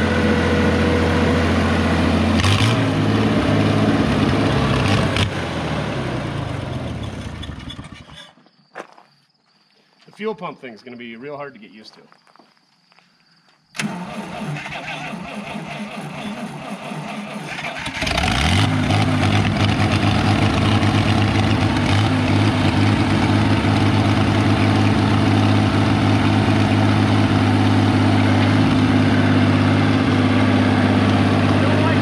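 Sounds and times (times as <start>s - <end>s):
tractor engine idling: 2.9s - 8.1s, 13.8s - 32.0s
tractor engine cranking: 6.3s - 8.4s, 13.8s - 32.0s.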